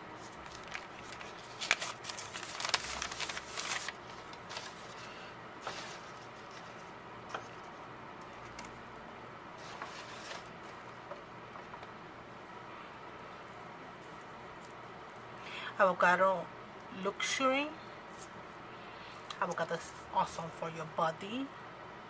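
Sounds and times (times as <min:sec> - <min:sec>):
soap wrapping crinkling: 0:00.2 - 0:05.0.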